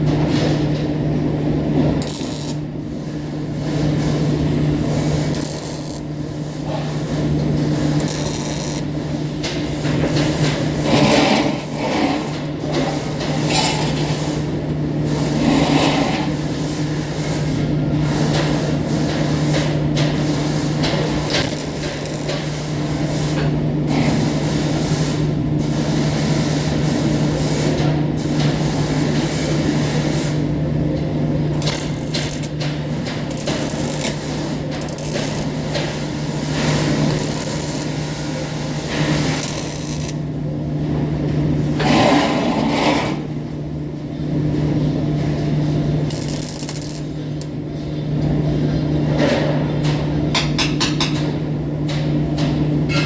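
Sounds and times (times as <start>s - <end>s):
welding machine hum: 0.3s - 15.4s, 17.0s - 27.4s, 28.2s - 41.8s, 44.2s - 47.7s
arc welding crackling: 1.9s - 9.7s, 19.5s - 23.2s, 31.3s - 40.4s, 45.2s - 47.6s.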